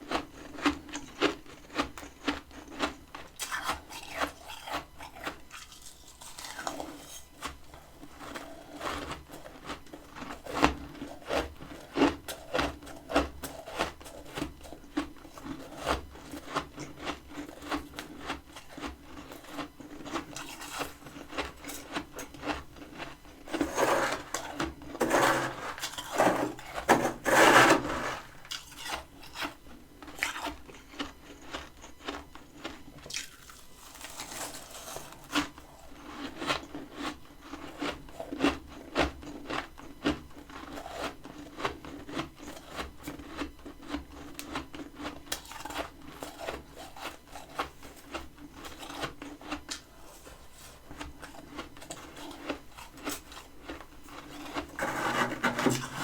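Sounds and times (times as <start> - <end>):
chewing with small crackles: 0.0 - 26.9, 28.2 - 55.2
frost crunching when bitten: 30.1 - 35.5.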